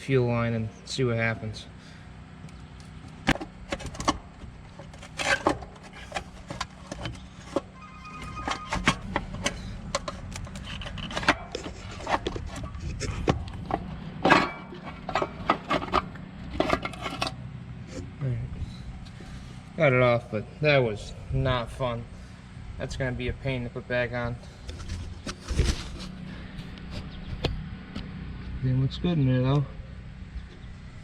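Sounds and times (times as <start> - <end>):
knocks clicks and scrapes on engine: 2.4 - 19.7, 24.1 - 28.6, 30.2 - 31.0.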